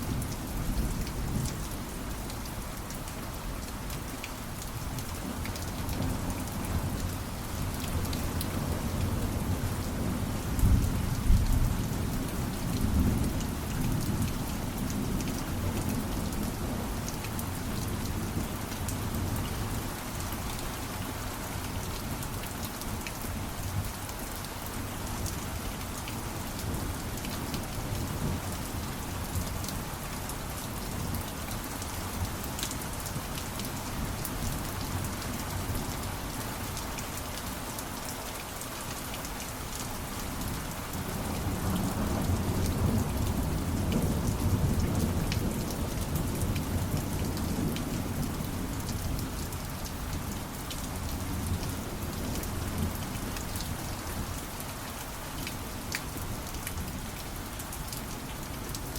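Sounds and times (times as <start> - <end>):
rain pattering: 0.0 - 58.9
low rumble of thunder: 41.0 - 49.4.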